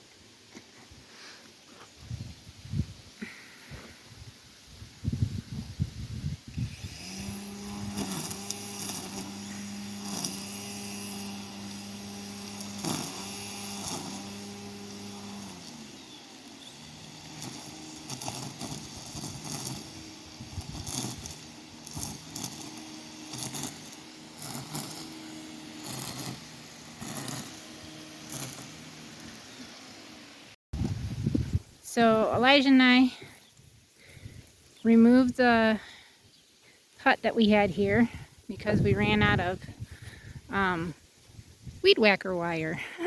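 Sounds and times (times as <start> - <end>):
string trimmer engine running: 6.1 - 36.0, 37.2 - 41.0.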